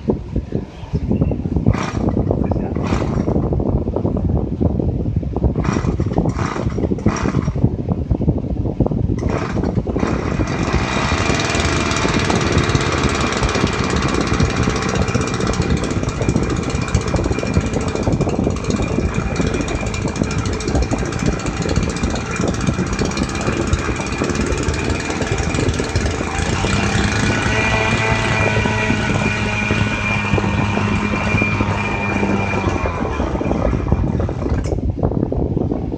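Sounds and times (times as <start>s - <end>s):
small water pump engine running: 5.6s - 7.5s, 9.2s - 34.7s.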